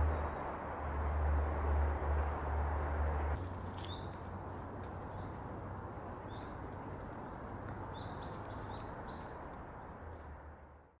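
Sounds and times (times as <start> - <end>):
background noise: 0.0 - 11.0
small birds chirping: 3.7 - 10.4.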